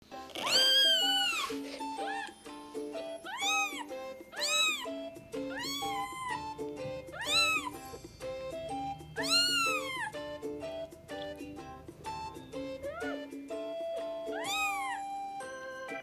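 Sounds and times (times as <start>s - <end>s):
light plucked background music: 0.0s - 16.0s
kitten meowing: 0.3s - 2.4s, 3.0s - 7.9s, 9.1s - 10.3s, 12.2s - 13.3s, 14.2s - 15.4s.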